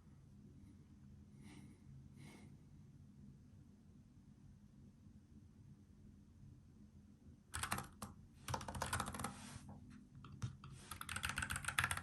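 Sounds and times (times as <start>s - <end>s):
mechanical keyboard typing: 7.6s - 9.4s, 10.2s - 12.0s.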